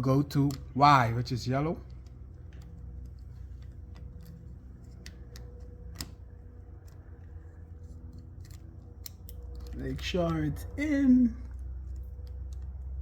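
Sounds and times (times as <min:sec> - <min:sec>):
faint steady hum: 0:00.0 - 0:13.0
small clicks of wire fitting: 0:01.8 - 0:06.2, 0:06.8 - 0:10.5, 0:11.4 - 0:13.0.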